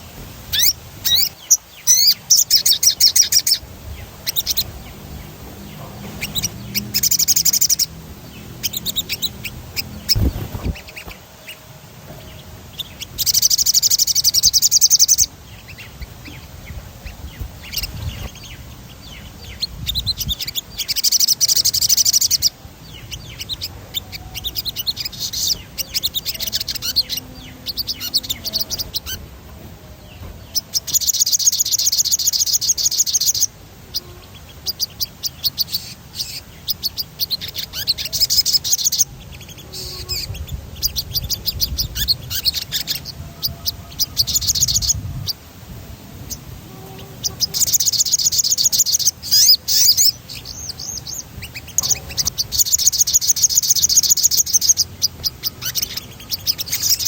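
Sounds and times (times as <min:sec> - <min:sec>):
bird singing with rolling trills: 0:00.0 - 0:57.0.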